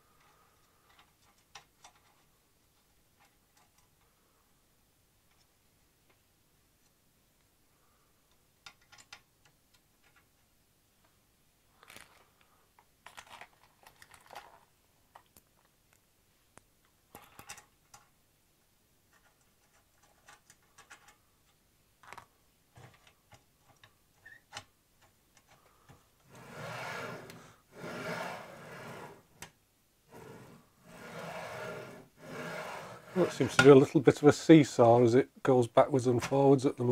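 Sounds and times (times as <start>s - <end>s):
carriage sliding on guide rods: 26.2s - 29.5s, 30.1s - 33.9s.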